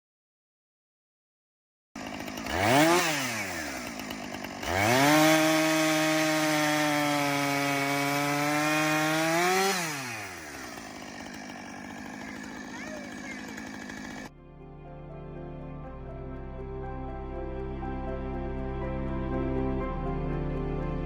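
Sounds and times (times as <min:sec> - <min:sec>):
chainsaw revving: 0:02.0 - 0:14.3.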